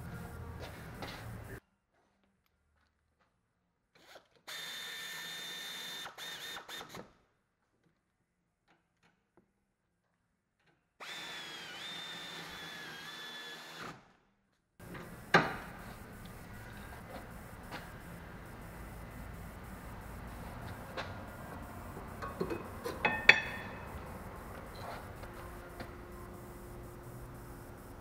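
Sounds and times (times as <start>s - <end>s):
cordless drill whining: 11.0s - 14.0s.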